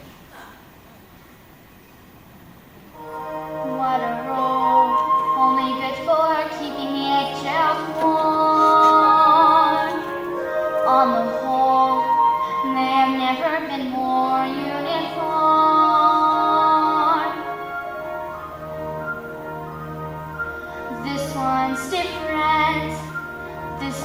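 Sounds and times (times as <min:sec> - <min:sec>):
musical accompaniment: 0:03.0 - 0:24.0
young female voice singing: 0:03.6 - 0:17.5, 0:20.9 - 0:23.2, 0:23.8 - 0:24.0.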